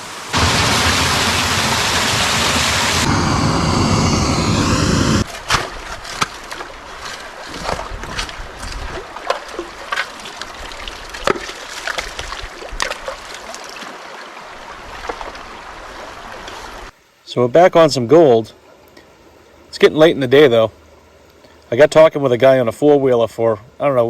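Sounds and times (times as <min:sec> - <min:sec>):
small splashes and knocks: 0:05.4 - 0:14.2, 0:14.9 - 0:15.5
brook water rushing: 0:06.6 - 0:16.9.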